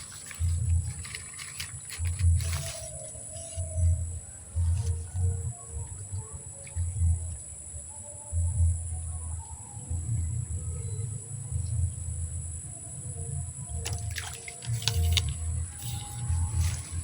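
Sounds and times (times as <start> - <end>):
splashy rustles: 0.0 - 3.7, 13.9 - 17.0
insects droning: 0.0 - 17.0.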